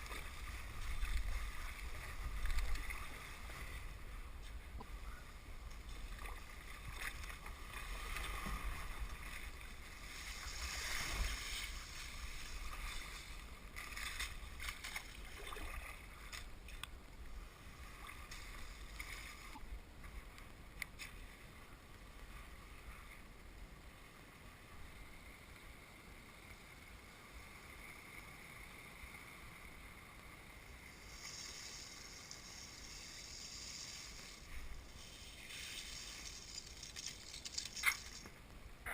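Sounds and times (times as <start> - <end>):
thin ice crackling and tinkling: 35.0 - 38.3.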